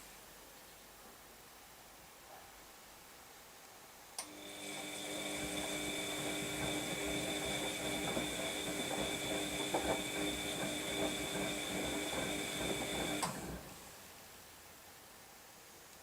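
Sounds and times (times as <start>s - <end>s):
washing machine running: 4.3s - 14.0s.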